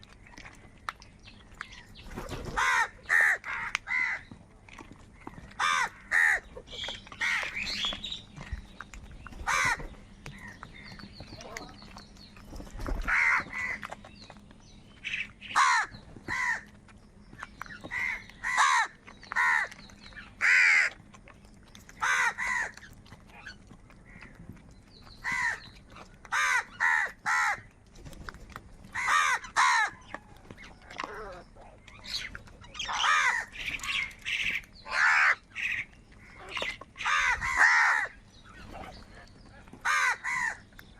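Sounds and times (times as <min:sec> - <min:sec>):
crows cawing: 0:02.5 - 0:04.2, 0:05.6 - 0:06.4, 0:09.4 - 0:10.5, 0:13.0 - 0:13.8, 0:15.5 - 0:16.7, 0:17.9 - 0:19.7, 0:20.4 - 0:21.0, 0:22.0 - 0:22.8, 0:25.2 - 0:25.6, 0:26.3 - 0:27.7, 0:28.9 - 0:30.3, 0:32.8 - 0:38.2, 0:39.8 - 0:40.6.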